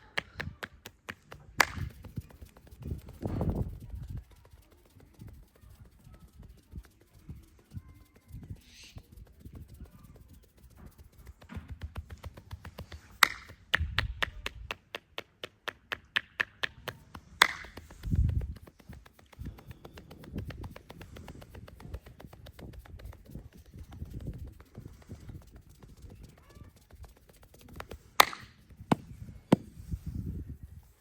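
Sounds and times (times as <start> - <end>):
hands rubbing: 0.0 - 15.1, 15.9 - 31.0
quick hand taps: 0.0 - 30.2.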